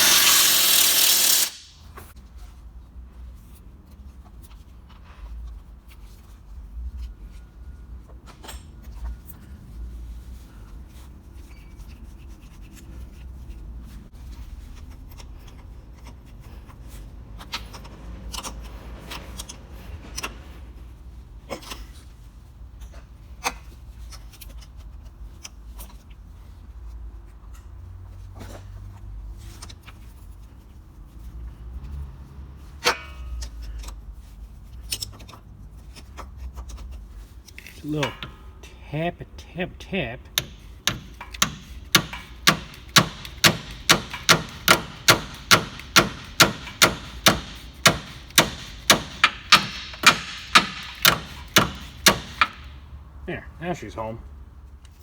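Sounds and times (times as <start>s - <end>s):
sharp knock: 40.4s - 52.7s.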